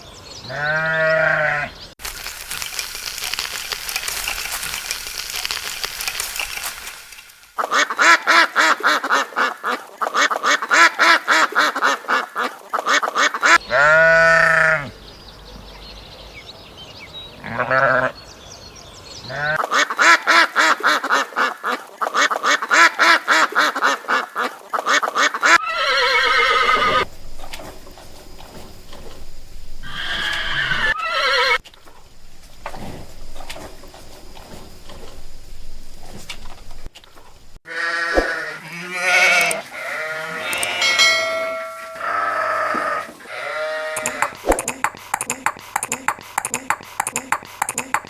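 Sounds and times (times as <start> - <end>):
livestock bleating: 0.5 - 1.7, 17.4 - 18.1, 37.7 - 44.2.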